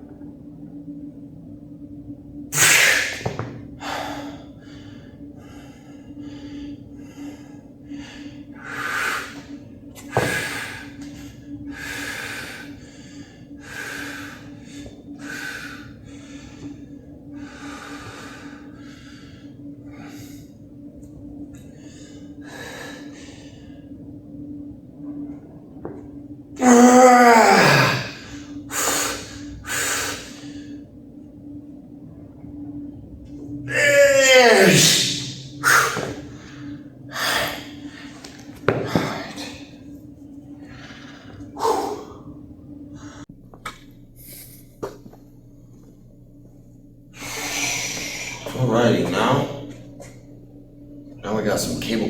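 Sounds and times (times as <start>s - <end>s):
steady low hum: 0.0s - 52.0s
man breathing hard: 3.8s - 20.6s, 21.6s - 24.0s, 27.0s - 30.9s, 34.8s - 43.3s, 47.2s - 48.6s.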